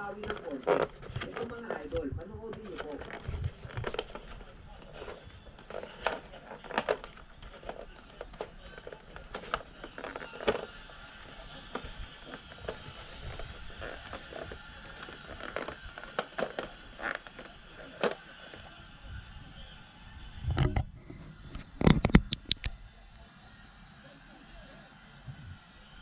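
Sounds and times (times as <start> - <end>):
commentator speaking: 0.0 - 4.0
arena crowd noise: 0.0 - 26.0.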